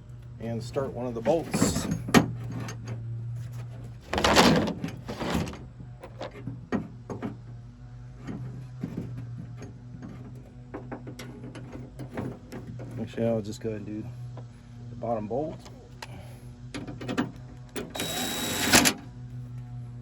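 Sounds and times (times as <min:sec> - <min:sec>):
scraping rustle: 0:00.7 - 0:06.6.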